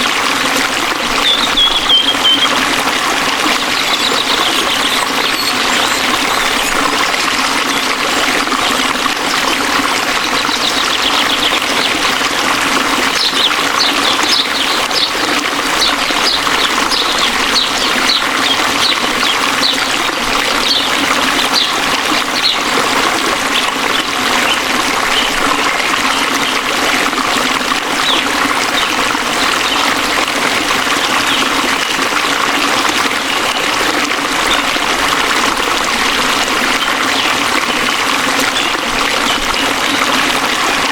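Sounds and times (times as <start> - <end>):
waterfall rushing: 0.0 - 40.9
bird chirping: 1.2 - 2.6, 3.4 - 6.9, 13.2 - 15.2.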